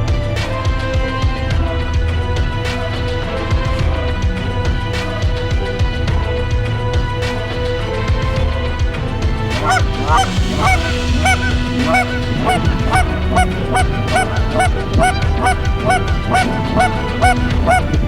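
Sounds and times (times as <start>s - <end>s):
background music with held notes: 0.0s - 18.0s
goose honks: 9.6s - 18.0s.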